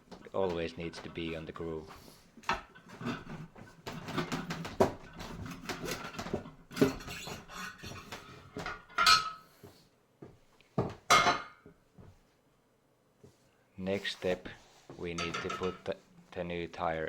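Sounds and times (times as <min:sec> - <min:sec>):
steel tools clanking on wheel rim: 0:02.4 - 0:09.5, 0:15.1 - 0:16.0.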